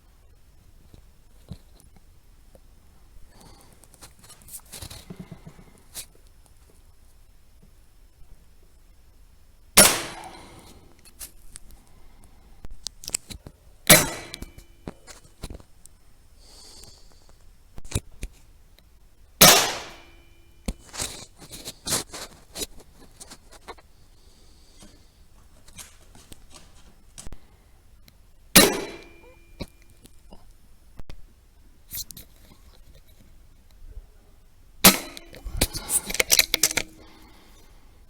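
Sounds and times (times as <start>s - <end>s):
rifle shots: 9.8s - 10.7s, 13.9s - 14.6s, 19.4s - 20.3s, 28.6s - 29.2s, 34.9s - 35.4s.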